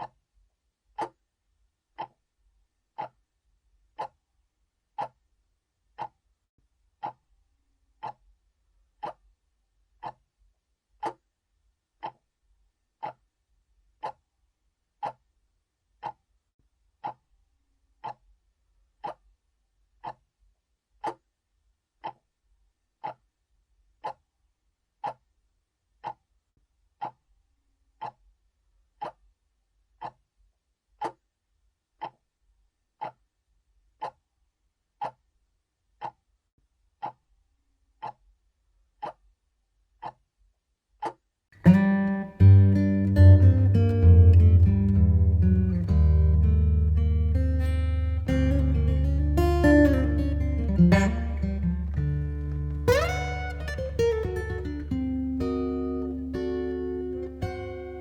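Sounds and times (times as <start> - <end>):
clock ticking: 47.0 - 58.0.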